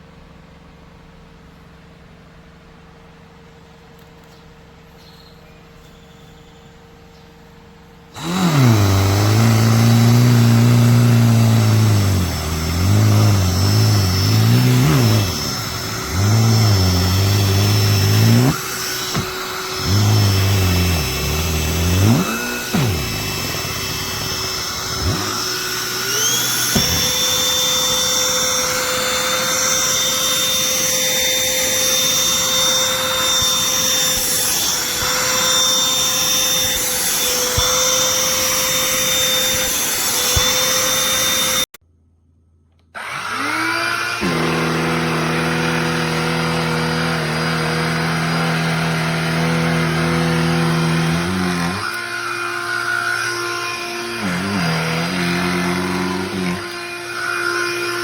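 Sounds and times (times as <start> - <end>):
handheld vacuum motor whine: 8.0 - 41.8, 43.0 - 58.0
low engine revving: 8.2 - 39.6.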